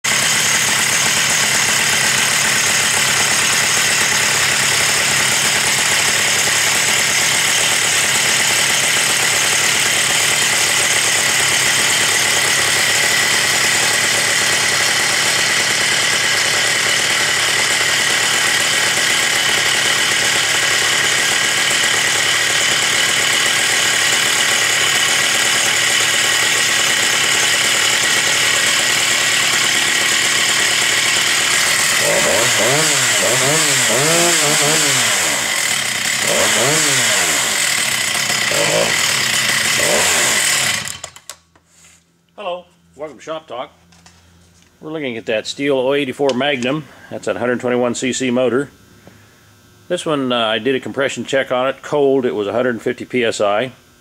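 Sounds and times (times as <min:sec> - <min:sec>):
chainsaw engine running: 0:00.0 - 0:41.4.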